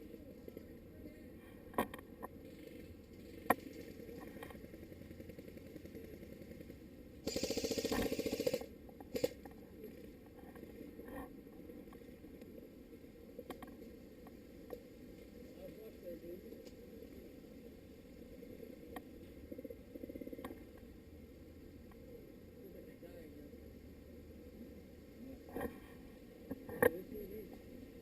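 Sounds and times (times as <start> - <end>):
airsoft gun automatic burst: 7.2 - 9.4.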